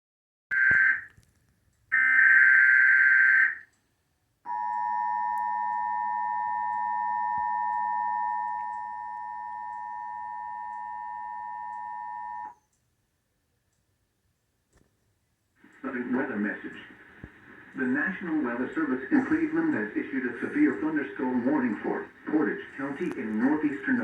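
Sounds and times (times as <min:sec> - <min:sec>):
steady two-tone alarm: 0:00.5 - 0:01.1, 0:01.9 - 0:03.8, 0:04.5 - 0:12.7.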